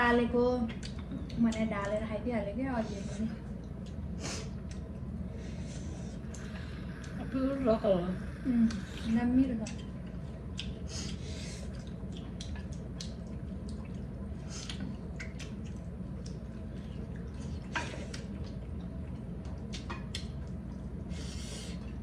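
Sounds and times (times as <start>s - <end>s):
steady low hum: 0.0s - 22.0s
chewing and mouth noises: 0.7s - 2.0s, 8.7s - 21.0s.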